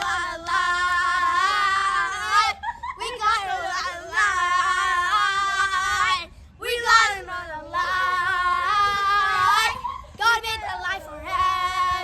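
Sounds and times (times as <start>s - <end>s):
child singing: 0.0s - 12.0s.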